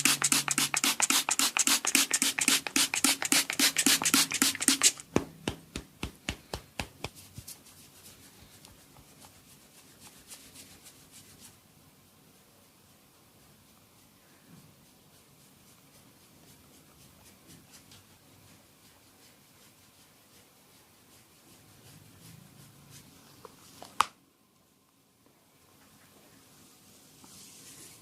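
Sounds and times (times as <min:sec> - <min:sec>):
fingers scratching a scalp: 0:00.0 - 0:05.1, 0:06.8 - 0:11.6.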